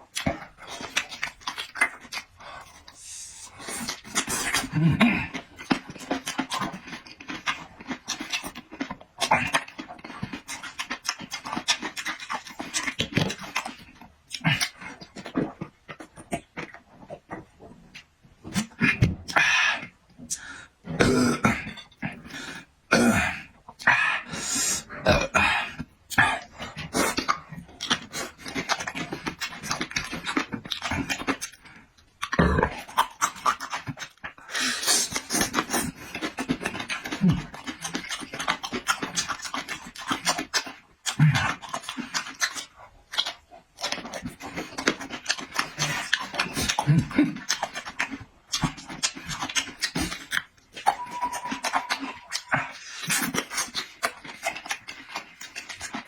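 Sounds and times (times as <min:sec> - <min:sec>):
chewing and lip smacking: 0:00.1 - 0:22.7, 0:25.4 - 0:56.0
heavy breathing through nose: 0:02.5 - 0:04.4, 0:23.9 - 0:25.8.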